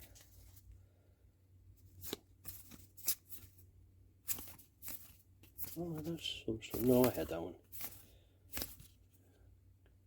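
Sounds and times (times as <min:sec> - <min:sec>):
cards flicking and rustling: 0:01.8 - 0:09.2.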